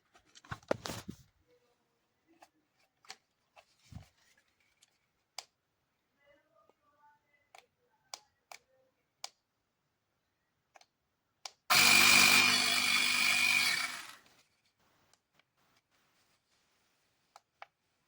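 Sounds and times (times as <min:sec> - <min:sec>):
air compressor motor whine: 0:11.7 - 0:14.2.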